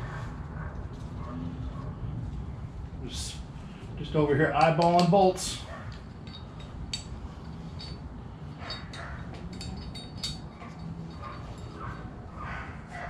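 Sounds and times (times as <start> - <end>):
distant dogs barking and snarling: 0.0 - 2.5, 5.5 - 6.2, 8.4 - 9.6, 10.5 - 13.0
metallic clinks of bolts: 4.6 - 12.1.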